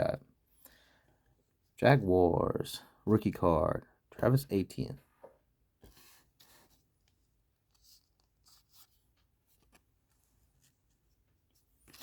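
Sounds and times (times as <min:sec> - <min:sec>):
trading cards rustling: 0:05.9 - 0:12.0.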